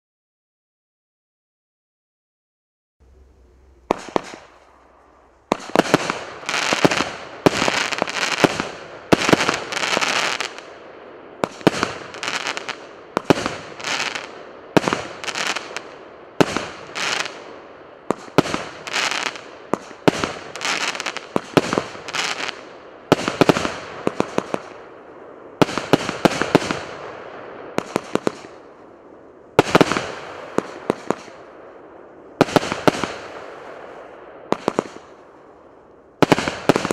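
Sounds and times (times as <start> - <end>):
firework crackling: 3.0 - 36.9
firework battery cracks: 3.1 - 10.6.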